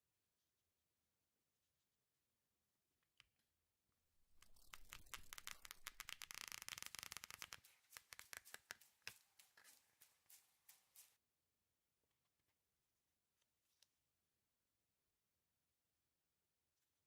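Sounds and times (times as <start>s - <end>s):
flip book pages riffling: 4.3s - 11.2s.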